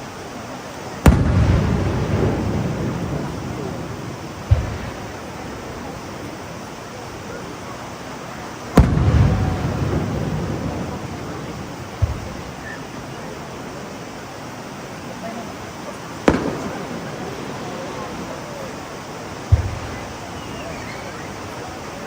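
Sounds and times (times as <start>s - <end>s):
firework shells bursting: 1.0s - 22.0s.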